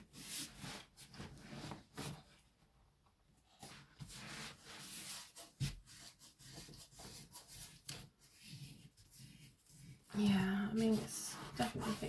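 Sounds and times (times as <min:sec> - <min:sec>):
canvas and plastic film rustling: 0:03.7 - 0:12.0.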